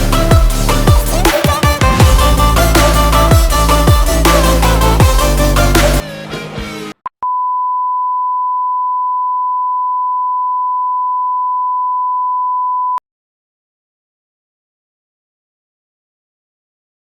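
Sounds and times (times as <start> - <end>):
song: 0.0 - 6.8.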